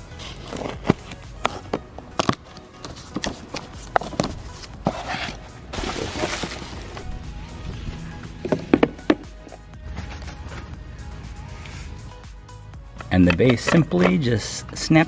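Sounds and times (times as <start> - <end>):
background music: 0.0 - 15.0
packing rustling: 0.1 - 7.2.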